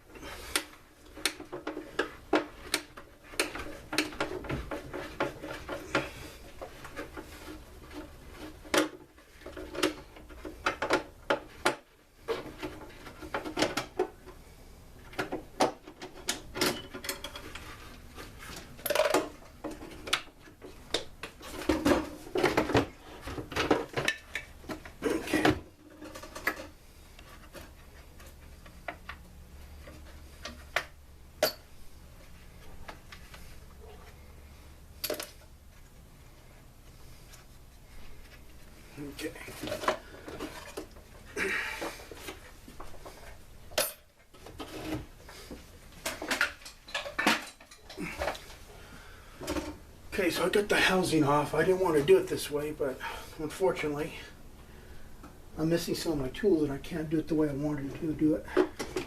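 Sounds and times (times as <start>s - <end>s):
tools and parts clicking and clinking: 15.1s - 17.9s, 18.6s - 29.2s, 29.8s - 31.7s, 35.0s - 35.5s, 41.8s - 45.0s, 46.0s - 48.6s.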